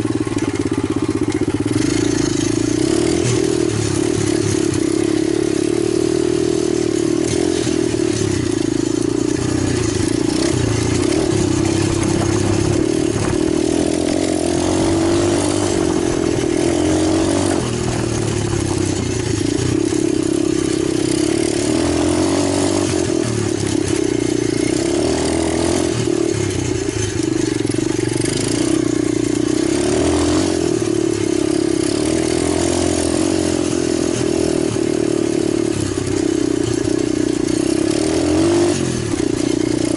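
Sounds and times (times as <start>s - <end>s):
motorbike engine running: 0.0s - 39.9s.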